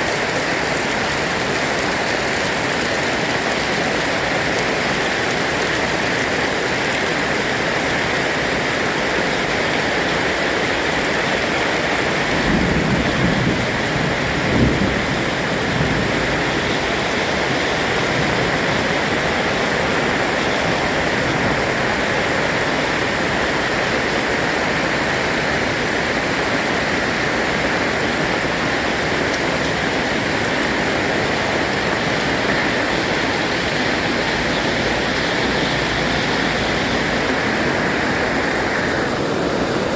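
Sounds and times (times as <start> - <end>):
heavy rain: 0.0 - 39.9
thunder rumble: 12.2 - 20.2.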